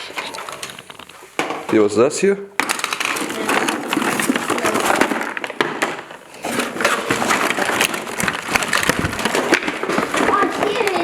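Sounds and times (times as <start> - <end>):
plastic toy parts clicking and rattling: 2.6 - 11.0.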